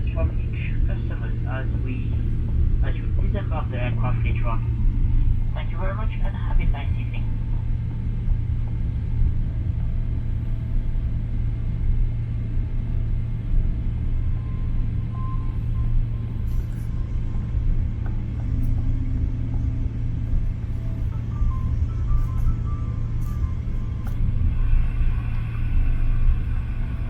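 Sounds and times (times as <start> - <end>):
low rumble in airplane cabin: 0.0 - 27.0.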